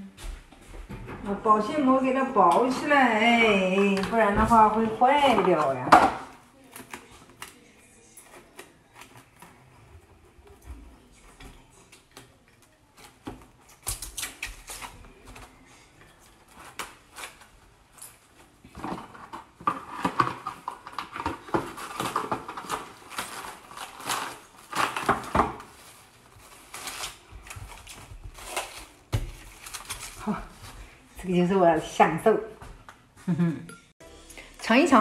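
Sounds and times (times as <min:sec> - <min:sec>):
cling film crinkling: 0:20.4 - 0:31.1.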